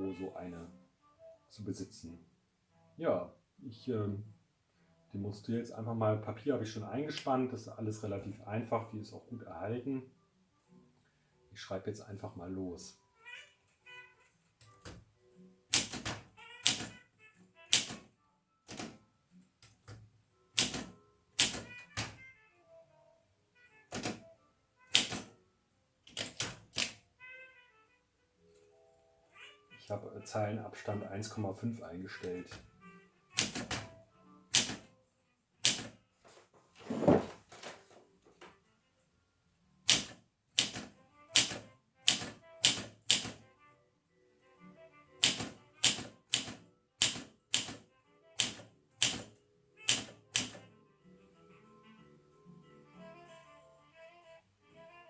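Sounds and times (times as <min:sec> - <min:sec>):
typewriter keys clacking: 0:15.8 - 0:17.0, 0:17.7 - 0:18.1, 0:20.6 - 0:22.2, 0:24.9 - 0:25.3, 0:26.1 - 0:27.0, 0:33.3 - 0:33.9, 0:35.6 - 0:36.0, 0:39.9 - 0:43.4, 0:45.2 - 0:47.8, 0:48.4 - 0:49.3, 0:49.9 - 0:50.6
typewriter heavy clunk: 0:20.6 - 0:22.2, 0:26.1 - 0:27.0, 0:33.4 - 0:33.9, 0:39.9 - 0:43.4.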